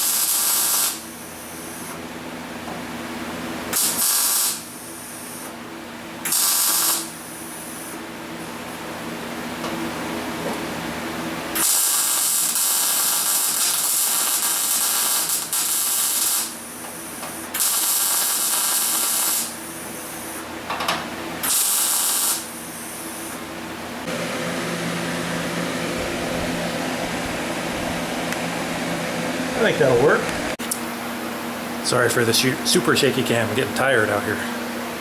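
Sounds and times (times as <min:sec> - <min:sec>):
welding arc crackling and hissing: 0:00.0 - 0:02.0, 0:03.7 - 0:05.5, 0:06.2 - 0:07.9, 0:11.5 - 0:20.4, 0:21.4 - 0:23.4.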